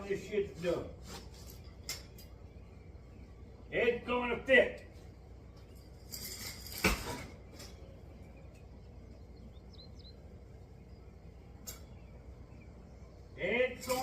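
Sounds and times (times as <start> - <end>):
rustling scrape: 1.0 - 1.8
faint bird chirps: 7.5 - 13.4.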